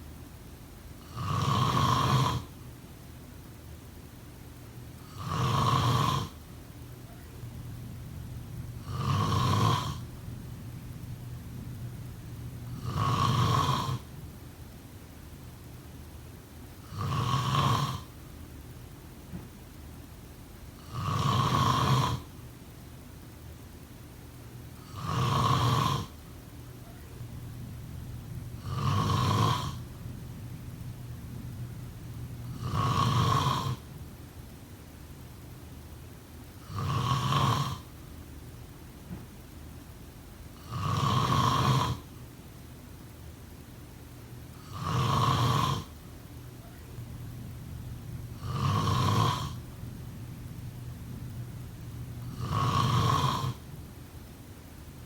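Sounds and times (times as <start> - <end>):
person snoring loudly: 1.0 - 2.5, 5.1 - 6.4, 8.7 - 10.1, 12.6 - 14.1, 16.8 - 18.1, 20.8 - 22.3, 24.8 - 26.2, 28.5 - 30.3, 31.6 - 33.9, 36.6 - 37.9, 40.6 - 42.1, 44.6 - 45.9, 47.0 - 50.4, 51.8 - 53.6.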